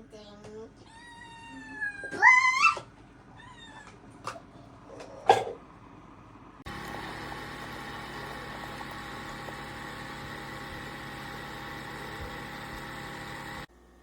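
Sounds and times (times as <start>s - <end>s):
machine hum with steady tones: 6.3s - 14.0s.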